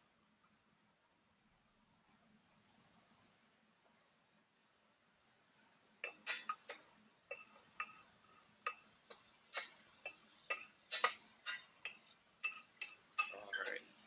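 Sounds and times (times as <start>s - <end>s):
metal utensil clinking on pot: 6.0s - 13.8s.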